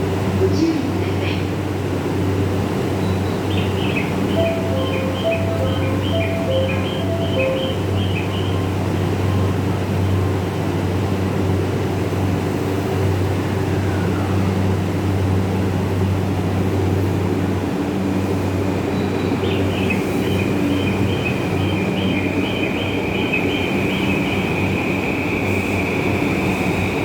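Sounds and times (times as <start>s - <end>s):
electric train motor hum: 2.4s - 12.2s
high pulsing tone: 3.9s - 8.4s.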